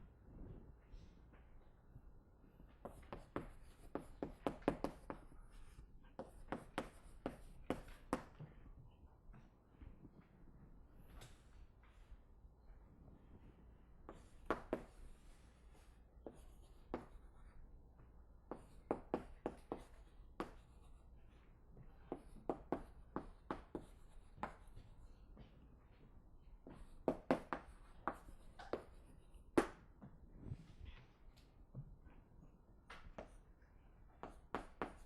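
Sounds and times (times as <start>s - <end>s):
faint low room hum: 0.0s - 35.0s
writing on a board: 2.7s - 8.6s, 14.0s - 17.6s, 18.4s - 26.0s, 26.6s - 29.9s, 32.9s - 33.5s, 34.2s - 35.0s.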